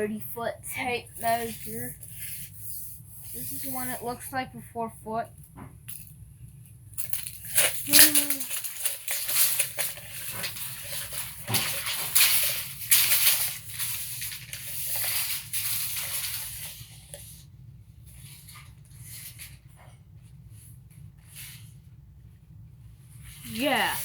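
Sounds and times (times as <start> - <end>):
tape measure rattling scrape: 7.1 - 17.1.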